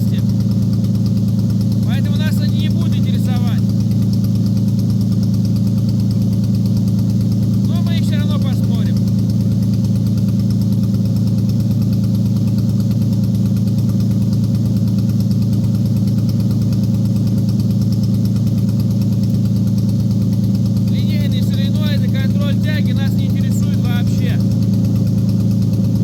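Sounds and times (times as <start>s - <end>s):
engine idling: 0.0s - 26.0s.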